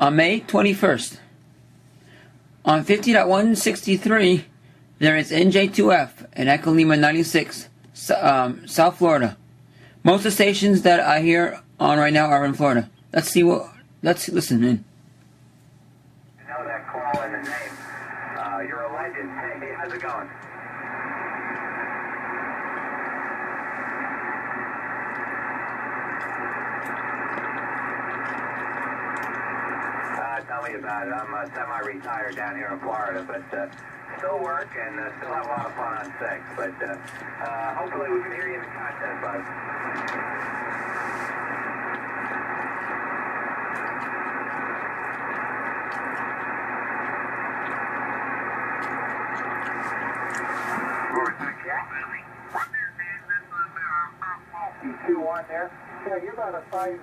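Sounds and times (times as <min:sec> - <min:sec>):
faint low hum: 0:00.0 - 0:57.0
radio receiver static hiss: 0:16.4 - 0:57.0.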